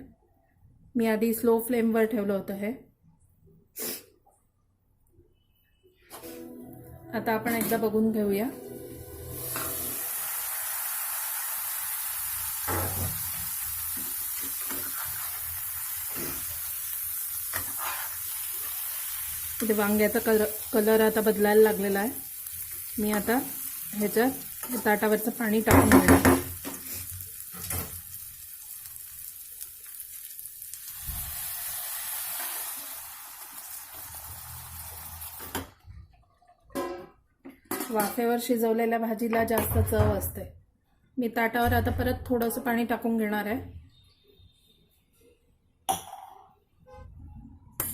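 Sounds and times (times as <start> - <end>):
vegetables sizzling in oil: 8.6 - 35.6
water poured into hot pan: 9.0 - 20.8, 26.4 - 35.6
utensil knocking against pan: 25.7 - 26.6.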